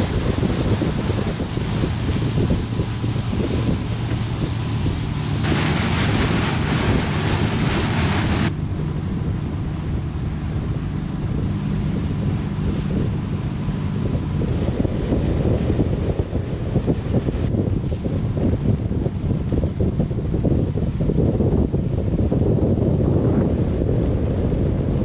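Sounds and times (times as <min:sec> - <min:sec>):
hull rushing through water: 0:00.0 - 0:25.0
motorboat engine running: 0:00.0 - 0:25.0
wind buffeting microphone: 0:00.0 - 0:25.0.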